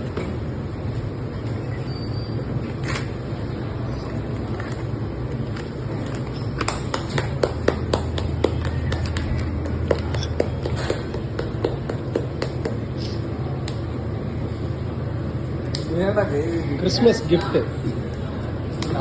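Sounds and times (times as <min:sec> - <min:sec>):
steady low hum: 0:00.0 - 0:19.0
hands tapping and clicking: 0:06.6 - 0:13.8.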